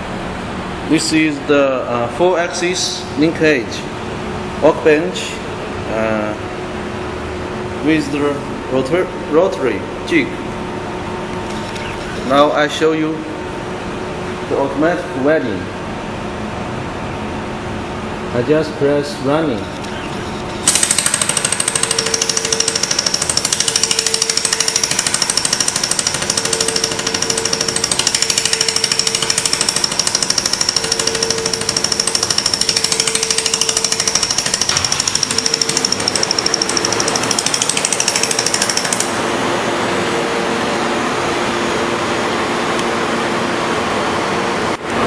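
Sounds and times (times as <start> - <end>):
laser welder pulsing buzz: 19.7 - 39.4.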